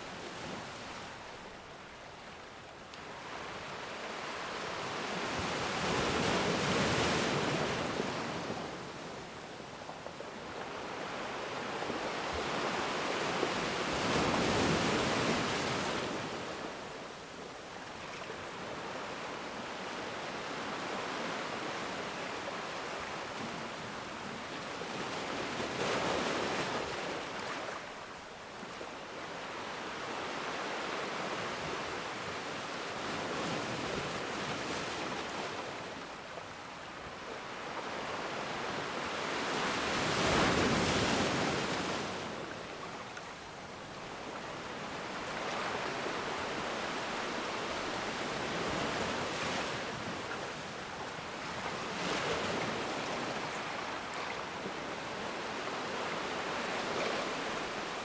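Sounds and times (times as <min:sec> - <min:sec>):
ocean waves breaking on shore: 0:00.0 - 0:58.0.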